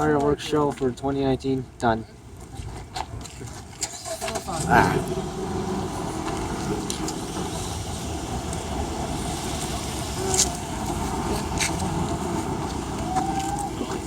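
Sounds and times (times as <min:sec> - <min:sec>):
low outdoor rumble: 0:03.8 - 0:14.0.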